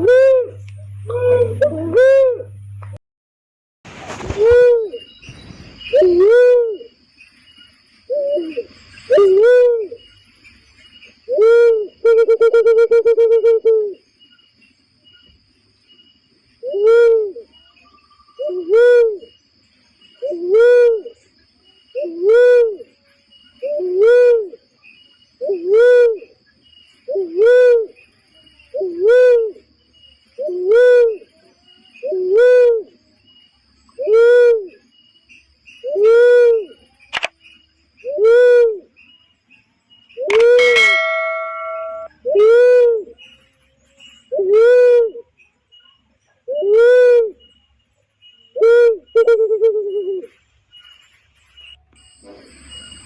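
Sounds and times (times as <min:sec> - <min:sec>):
dove cooing: 0:08.1 - 0:10.0.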